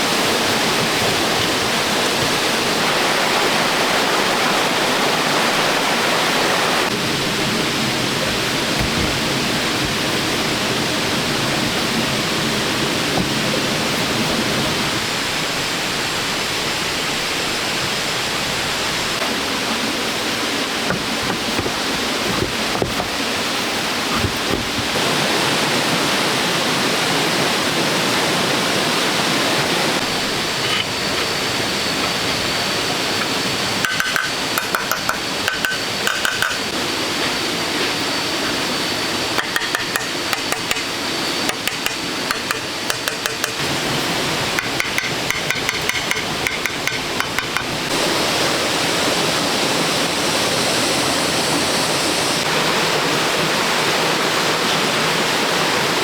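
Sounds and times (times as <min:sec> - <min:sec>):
running water rushing: 0:00.0 - 0:56.0
hard objects knocking and clinking: 0:33.2 - 0:36.7, 0:41.5 - 0:43.6, 0:44.6 - 0:47.8.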